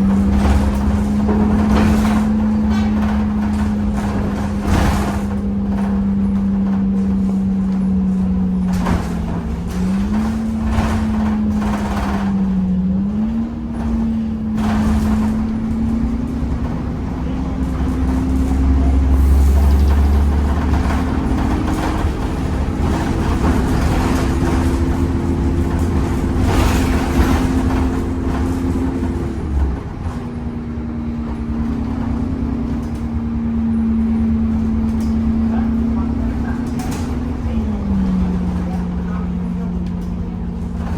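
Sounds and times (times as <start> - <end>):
bus engine low rumble: 0.0 - 40.9
bus transmission whine: 0.0 - 40.9.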